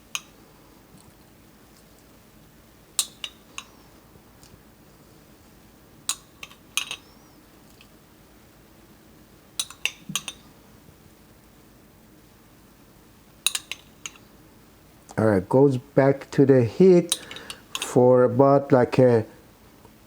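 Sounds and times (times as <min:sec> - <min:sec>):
cookware and utensils clinking: 0:06.1 - 0:07.1, 0:09.6 - 0:10.4, 0:17.1 - 0:18.0.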